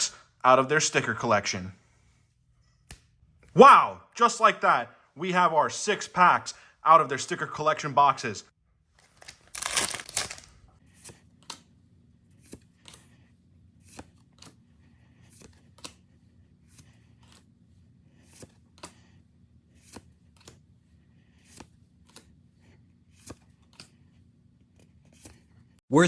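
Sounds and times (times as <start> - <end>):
cards sliding and snapping: 9.0 - 13.2, 13.8 - 25.6.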